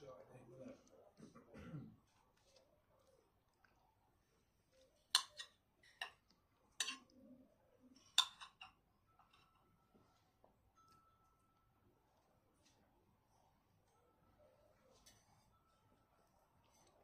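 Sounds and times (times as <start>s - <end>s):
cutlery clinking on plate: 5.1s - 7.1s, 8.1s - 9.6s.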